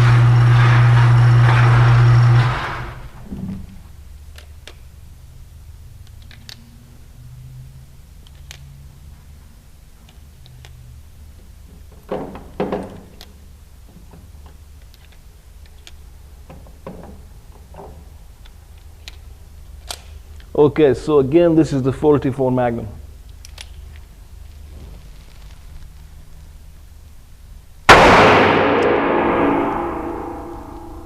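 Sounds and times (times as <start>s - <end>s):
low steady hum: 22.8s - 31.0s.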